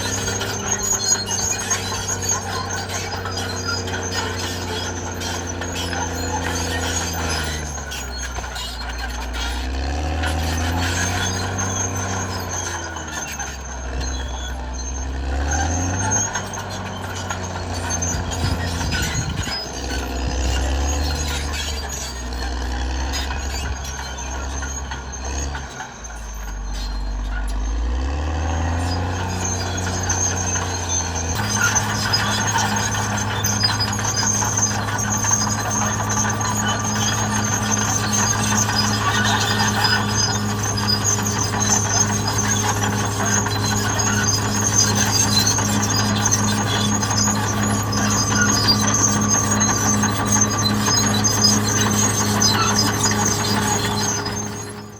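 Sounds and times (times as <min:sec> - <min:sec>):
bulldozer diesel engine working: 0:00.0 - 0:54.9
high squeal: 0:00.0 - 0:54.9.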